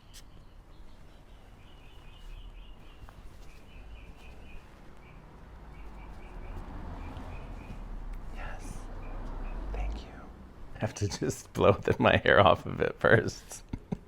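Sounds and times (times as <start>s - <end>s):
bird chirping: 0.0s - 11.0s.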